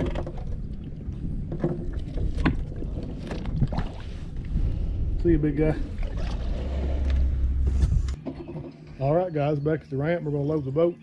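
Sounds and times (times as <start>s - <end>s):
water splashing and knocking: 0.0s - 4.1s
low wind rumble: 0.0s - 8.2s.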